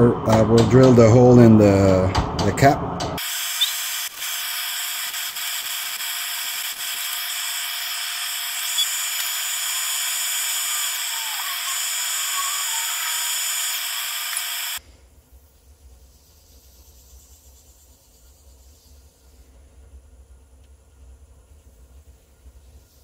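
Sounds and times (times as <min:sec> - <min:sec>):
drill boring into wood: 0:03.2 - 0:14.8.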